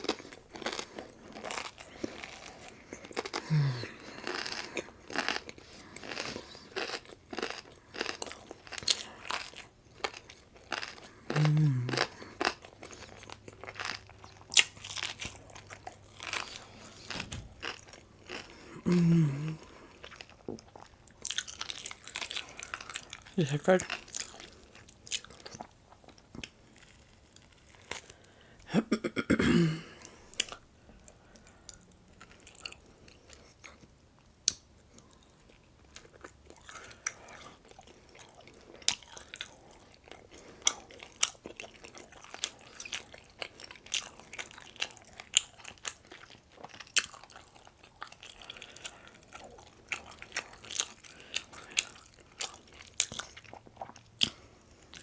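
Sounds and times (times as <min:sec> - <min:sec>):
chewing and crunching food: 0:00.0 - 0:28.7, 0:30.0 - 0:55.0
person humming mmm: 0:03.4 - 0:04.0, 0:11.3 - 0:12.1, 0:18.7 - 0:19.7, 0:28.7 - 0:30.0.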